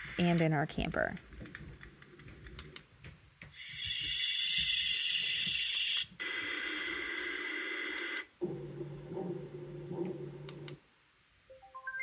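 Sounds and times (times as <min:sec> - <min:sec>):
white noise from small speaker: 0:00.0 - 0:11.8.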